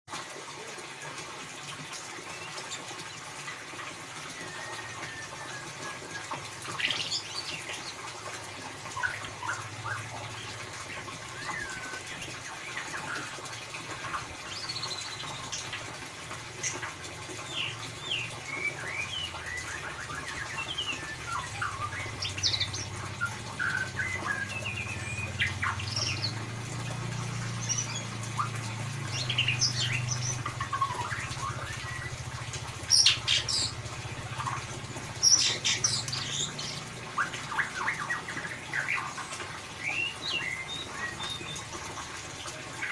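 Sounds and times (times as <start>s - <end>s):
bird singing chirps and whistles: 11.3s - 12.3s, 17.5s - 26.4s, 39.8s - 41.6s.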